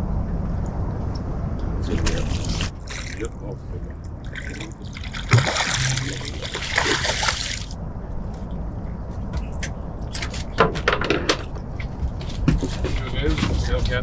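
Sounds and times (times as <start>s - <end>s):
fish splashing in water: 4.2s - 7.8s.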